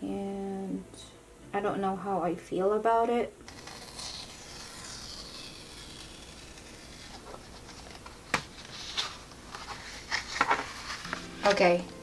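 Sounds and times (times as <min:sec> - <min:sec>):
packaging rustling: 0:03.5 - 0:11.2.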